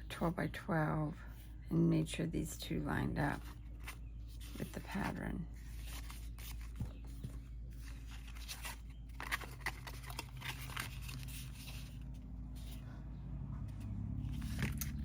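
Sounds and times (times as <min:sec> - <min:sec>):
steady low hum: 0:00.0 - 0:15.0
paper rustling and tapping: 0:05.8 - 0:12.0, 0:13.6 - 0:15.0.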